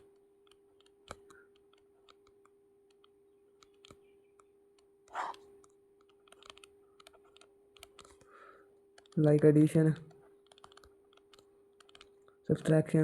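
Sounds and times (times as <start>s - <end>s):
computer keyboard typing clicks: 0.0s - 8.3s, 8.9s - 12.8s
faint steady hum: 0.0s - 13.0s.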